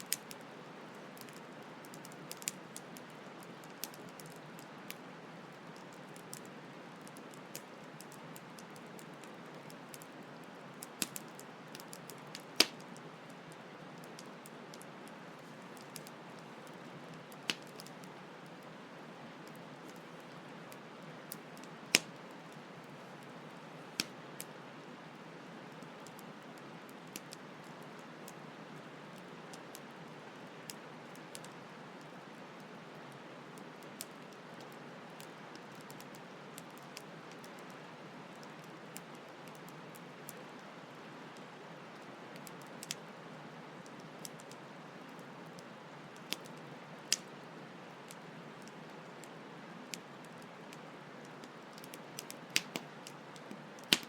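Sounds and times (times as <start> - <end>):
campfire crackling and popping: 0.0 - 18.7, 19.4 - 43.1, 43.8 - 54.0.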